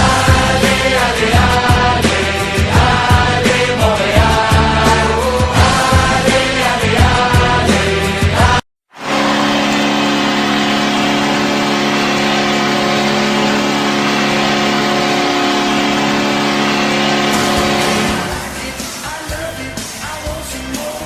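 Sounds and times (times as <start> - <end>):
goal horn blast: 8.9 - 19.0.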